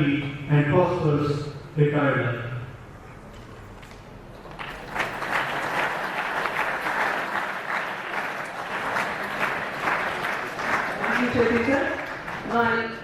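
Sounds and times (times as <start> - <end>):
audience applauding: 4.4 - 12.9.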